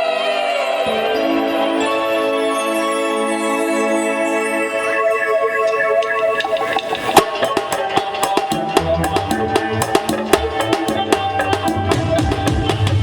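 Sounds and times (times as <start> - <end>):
held keyboard notes: 4.9 - 13.0
drum and percussion strikes: 6.0 - 13.0
heavy bass line: 6.7 - 13.0.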